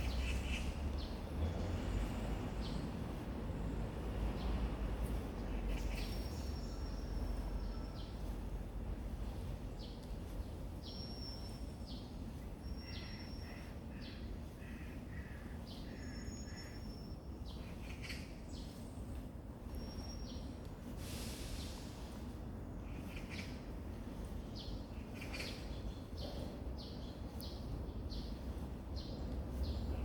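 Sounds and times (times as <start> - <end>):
low background rumble: 0.0 - 30.0
wild birds calling: 12.6 - 18.6.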